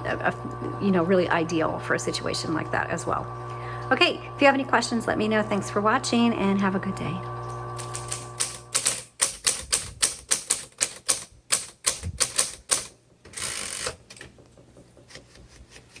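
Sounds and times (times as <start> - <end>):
typewriter keys striking: 7.8 - 16.0.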